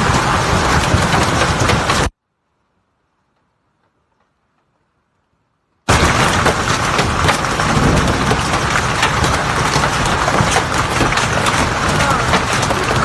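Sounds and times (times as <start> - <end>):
hailstones hitting hard: 0.0 - 2.2, 5.9 - 13.0.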